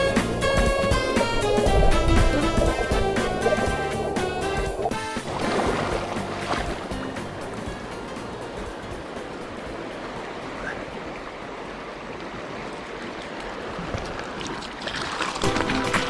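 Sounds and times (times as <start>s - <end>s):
music: 0.0s - 11.5s, 15.4s - 16.0s
river water rushing: 0.0s - 16.0s.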